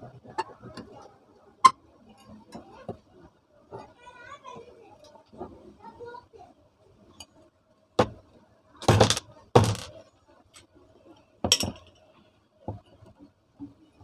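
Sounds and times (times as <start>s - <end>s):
metal tools knocking and clinking: 8.8s - 9.9s.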